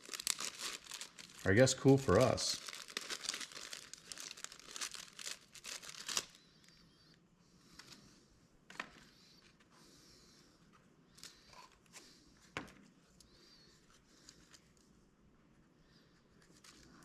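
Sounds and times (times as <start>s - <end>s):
packaging crinkling and tearing: 0.0s - 6.4s.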